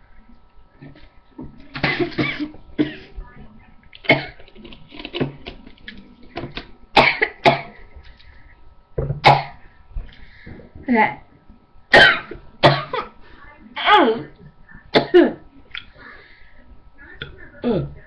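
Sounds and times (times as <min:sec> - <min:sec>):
person coughing: 0:01.8 - 0:03.1, 0:07.0 - 0:07.7, 0:12.0 - 0:13.1.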